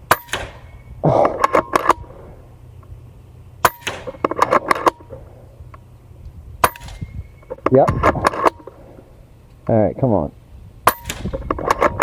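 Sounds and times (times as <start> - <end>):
air rifle crack: 3.6 - 9.2.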